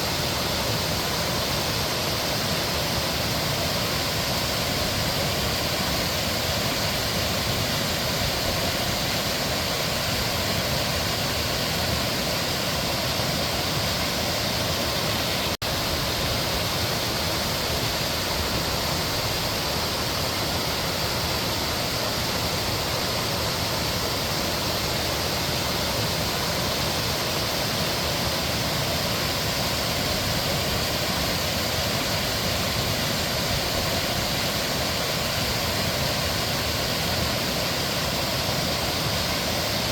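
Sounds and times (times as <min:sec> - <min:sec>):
stream water rushing: 0:00.0 - 0:39.9.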